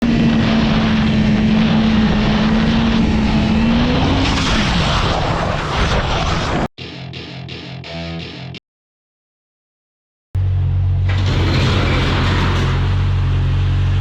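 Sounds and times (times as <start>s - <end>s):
motorcycle engine at high revs: 0.0s - 4.6s
heavy wind noise: 0.0s - 6.7s.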